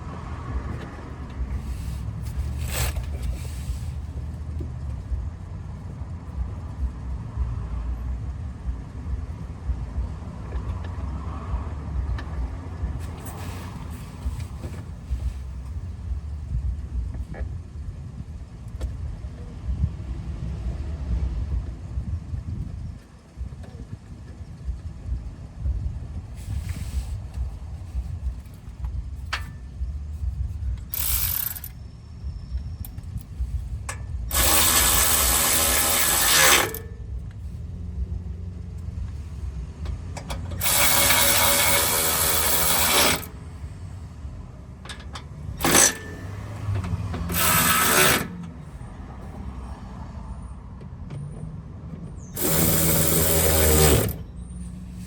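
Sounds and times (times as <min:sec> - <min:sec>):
cordless ratchet motor whining: 0:30.7 - 0:33.4, 0:34.3 - 0:36.9, 0:40.3 - 0:43.4, 0:45.0 - 0:48.5, 0:52.3 - 0:54.3.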